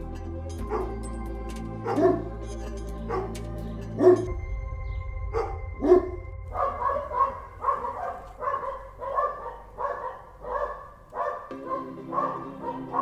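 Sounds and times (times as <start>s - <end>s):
dog barking: 0.6s - 1.0s, 1.8s - 2.3s, 3.0s - 3.4s, 5.4s - 13.0s.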